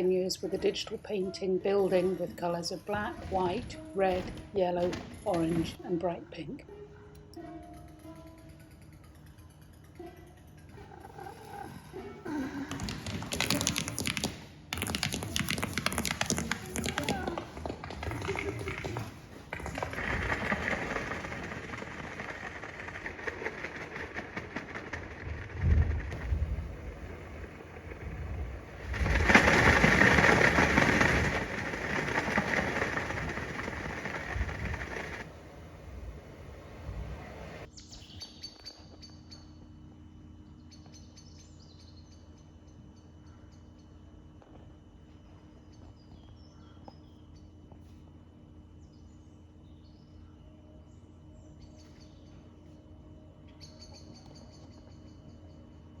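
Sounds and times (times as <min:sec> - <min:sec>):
dense rustling and crackling: 0:12.8 - 0:37.7
steady low hum: 0:16.5 - 0:56.0
faint birdsong: 0:33.6 - 0:44.4, 0:45.0 - 0:56.0.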